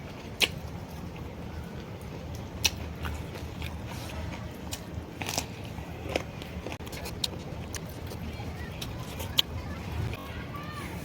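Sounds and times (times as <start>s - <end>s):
chewing: 0.0s - 10.3s
mouth clicks and smacks: 0.2s - 0.7s, 2.3s - 3.8s.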